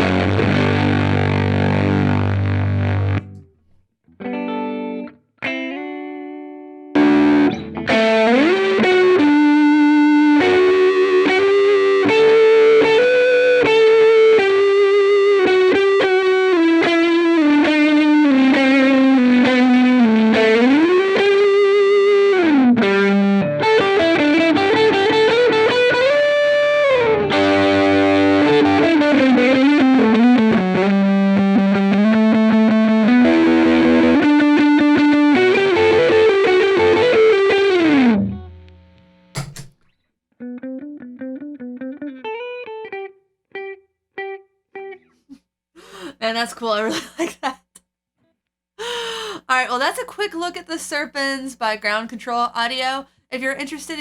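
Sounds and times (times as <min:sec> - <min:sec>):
distorted electric guitar: 0:00.0 - 0:03.5, 0:04.2 - 0:39.8.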